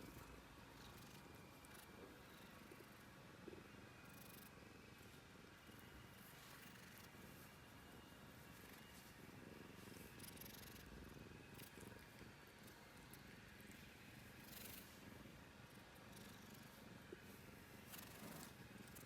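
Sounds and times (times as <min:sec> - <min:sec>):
cat purring: 0:00.0 - 0:19.0
soft rustles of movement: 0:06.0 - 0:10.2, 0:16.4 - 0:19.0.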